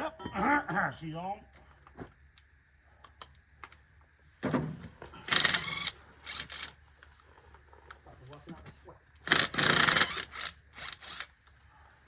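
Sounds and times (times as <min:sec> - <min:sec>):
impact driver rattling: 0:05.3 - 0:06.7, 0:09.2 - 0:11.3.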